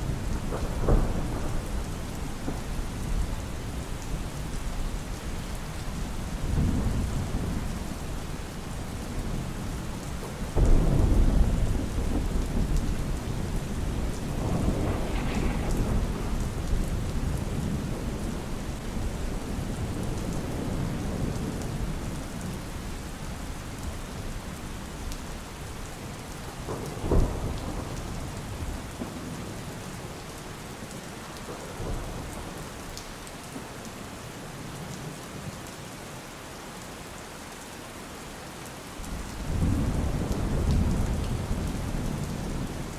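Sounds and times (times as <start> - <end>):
rolling thunder: 0.0 - 4.9, 6.0 - 22.9, 26.6 - 29.5, 39.1 - 42.9
steady rain: 0.0 - 42.9
thunder clap: 10.6 - 19.2.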